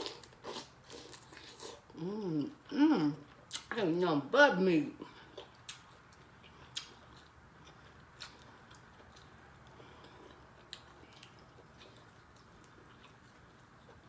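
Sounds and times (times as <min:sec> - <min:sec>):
quiet chewing: 0:05.0 - 0:14.0.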